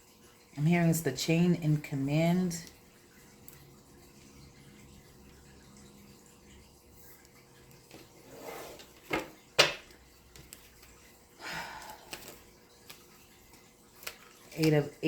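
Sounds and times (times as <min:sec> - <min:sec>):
cards rustling: 0:10.3 - 0:11.1, 0:11.8 - 0:15.0.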